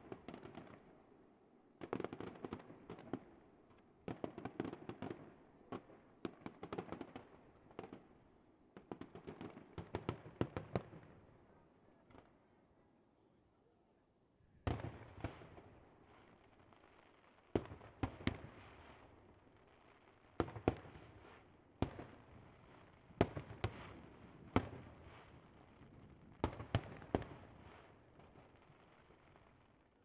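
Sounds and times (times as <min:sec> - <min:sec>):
fireworks bursting with echoing bangs: 0:14.6 - 0:29.8.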